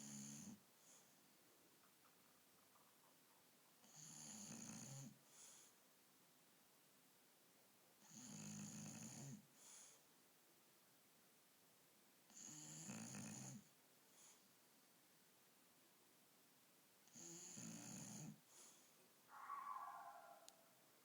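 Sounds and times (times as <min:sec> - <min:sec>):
dog snoring: 0:00.0 - 0:01.0, 0:03.8 - 0:05.7, 0:08.0 - 0:10.0, 0:12.3 - 0:13.7, 0:17.1 - 0:18.8.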